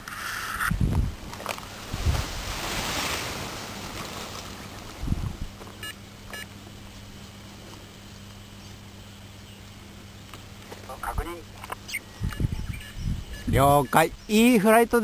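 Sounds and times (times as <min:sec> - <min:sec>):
steady low hum: 0:00.0 - 0:15.0
wind on microphone: 0:00.7 - 0:03.4, 0:04.9 - 0:05.6, 0:12.1 - 0:14.3.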